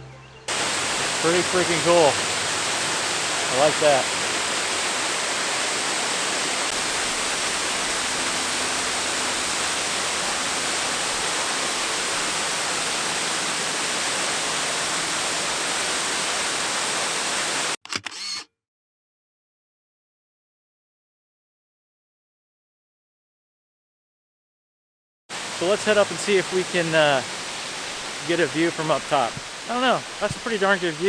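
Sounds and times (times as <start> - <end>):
waterfall rushing: 0.5 - 17.8, 25.3 - 31.0.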